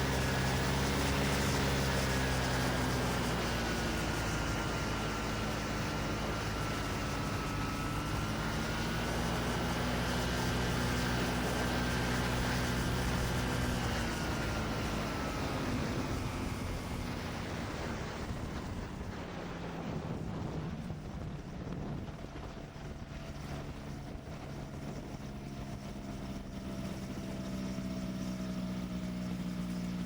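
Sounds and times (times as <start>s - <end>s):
ultralight engine and propeller whine: 0.0s - 30.0s.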